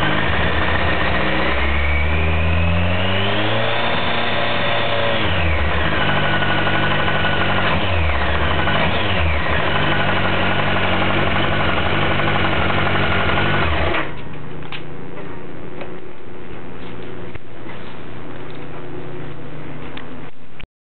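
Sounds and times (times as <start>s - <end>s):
motorcycle engine revving and idling: 0.0s - 14.2s.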